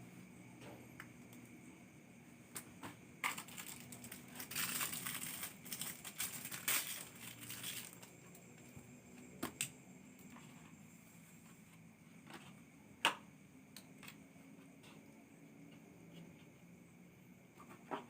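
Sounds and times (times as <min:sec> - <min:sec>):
crinkling and rustling: 0:02.6 - 0:08.8.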